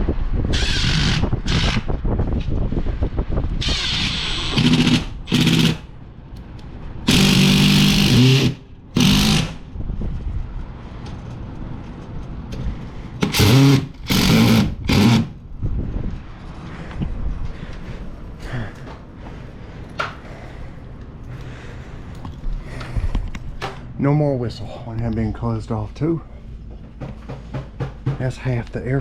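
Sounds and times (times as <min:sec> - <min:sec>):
power drill motor whine: 0:00.5 - 0:01.9, 0:03.6 - 0:05.8, 0:07.1 - 0:09.6, 0:13.2 - 0:15.3.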